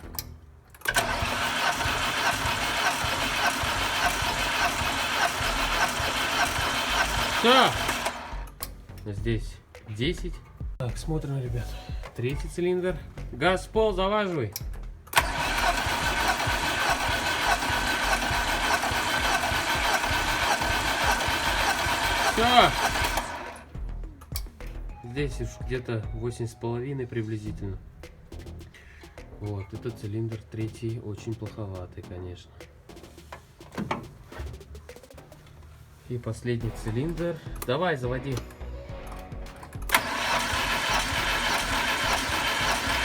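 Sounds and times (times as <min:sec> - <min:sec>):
starter motor click: 0:00.0 - 0:09.1, 0:14.5 - 0:24.8, 0:36.8 - 0:43.0
starter cranking engine: 0:00.0 - 0:09.2, 0:14.5 - 0:24.9, 0:36.6 - 0:43.0.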